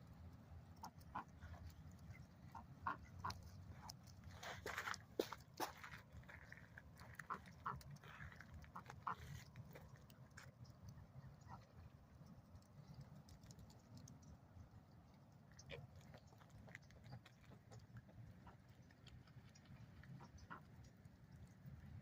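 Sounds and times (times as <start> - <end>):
low steady rumble: 0.0 - 22.0
ducks quacking faintly: 0.7 - 6.0, 6.7 - 12.3, 15.5 - 21.4.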